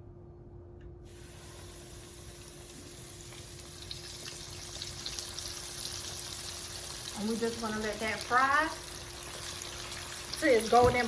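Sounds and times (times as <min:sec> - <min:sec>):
deep-fryer oil sizzling: 0:01.0 - 0:11.0.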